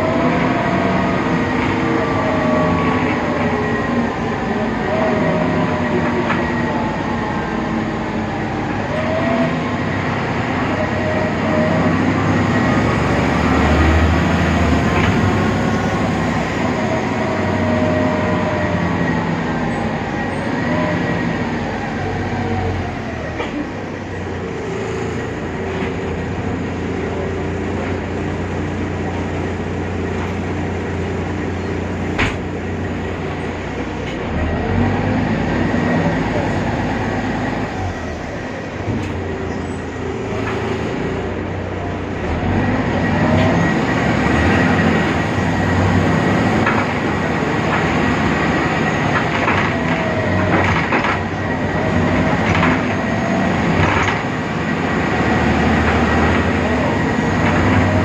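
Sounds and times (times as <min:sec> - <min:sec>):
bus engine running inside: 0:00.0 - 0:58.0.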